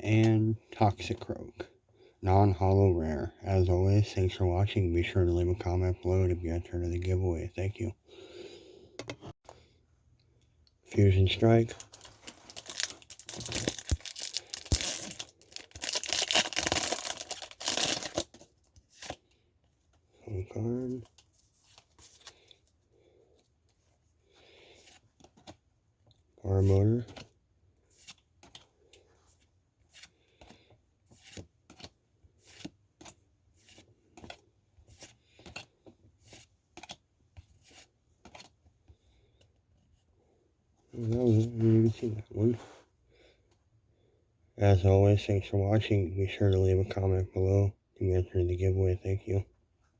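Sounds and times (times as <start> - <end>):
foil pack tearing and crinkling: 11.8 - 18.3
trading cards flipping: 11.8 - 19.2.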